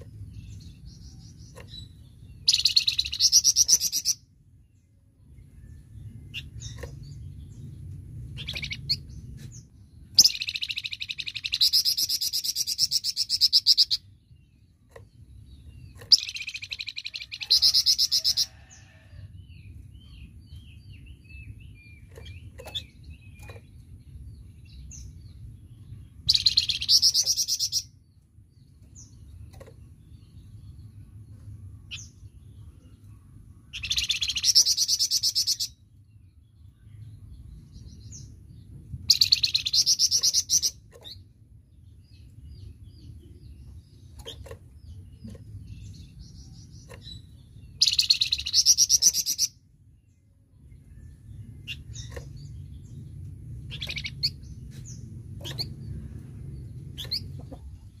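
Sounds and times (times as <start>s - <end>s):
bird chirps: 0.0s - 4.3s, 5.3s - 18.7s, 20.0s - 28.0s, 28.9s - 35.9s, 36.6s - 58.0s
low background rumble: 0.0s - 58.0s
songbird trilling: 1.8s - 4.2s, 10.2s - 14.1s, 44.1s - 49.6s, 53.7s - 54.4s.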